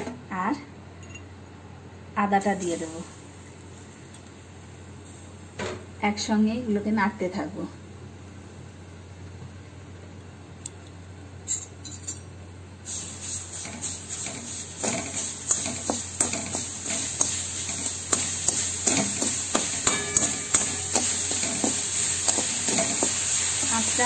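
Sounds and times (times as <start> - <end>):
frying hiss: 2.4 - 5.4, 12.8 - 24.0
spatula scraping a pan: 13.2 - 23.8.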